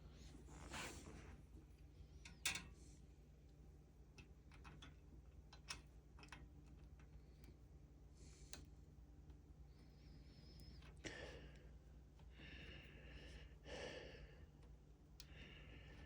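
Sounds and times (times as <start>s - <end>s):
small metal hardware clicking: 2.2s - 2.8s.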